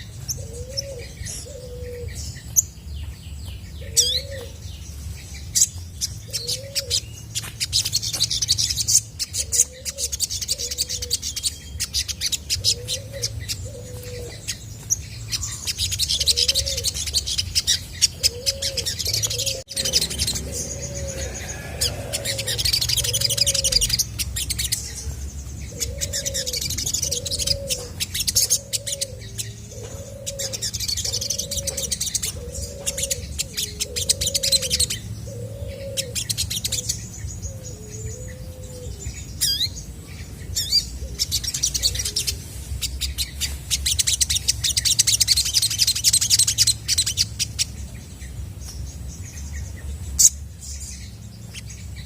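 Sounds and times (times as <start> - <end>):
steady low hum: 0.0 - 52.0
sunbird chirping and trilling: 0.0 - 52.0
lower bird call: 15.4 - 39.7.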